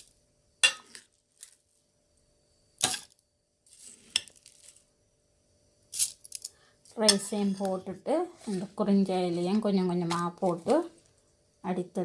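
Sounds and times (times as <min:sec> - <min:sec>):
rice rustling into jar: 0:02.8 - 0:05.0, 0:08.4 - 0:11.3.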